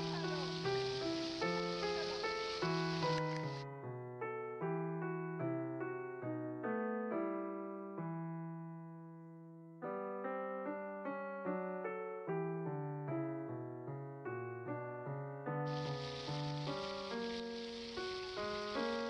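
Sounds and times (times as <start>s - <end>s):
solo piano music: 0.0s - 19.0s.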